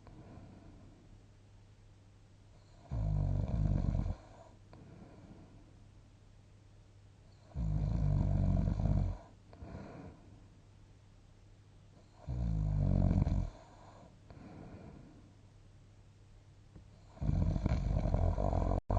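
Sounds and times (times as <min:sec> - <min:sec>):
person snoring: 0:17.0 - 0:18.9.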